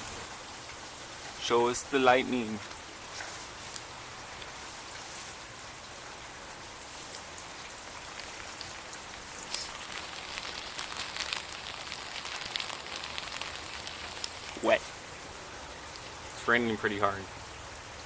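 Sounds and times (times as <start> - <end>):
heavy rain falling: 0.0 - 18.0.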